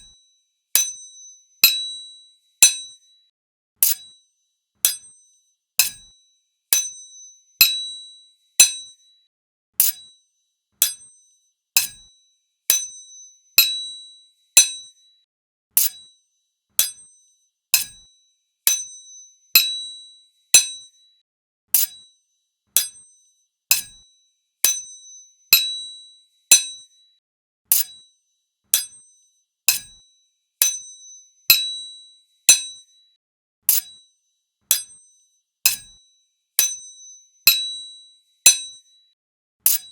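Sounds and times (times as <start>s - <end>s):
sword blades clashing: 39.7s - 39.9s.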